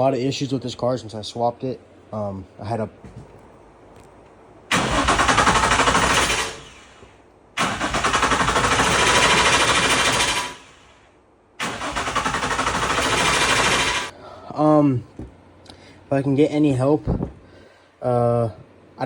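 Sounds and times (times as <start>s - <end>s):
car starter cranking engine: 4.7s - 7.0s, 7.6s - 11.0s, 11.6s - 14.1s.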